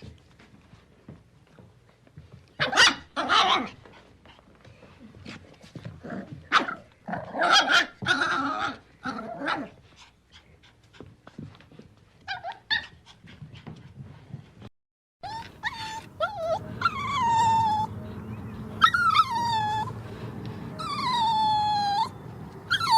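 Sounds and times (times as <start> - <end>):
puppy barking and calling: 2.6 - 3.8, 15.2 - 22.9
puppy yips: 2.6 - 3.8, 7.4 - 8.8, 12.2 - 13.0, 15.2 - 20.0, 20.8 - 22.9.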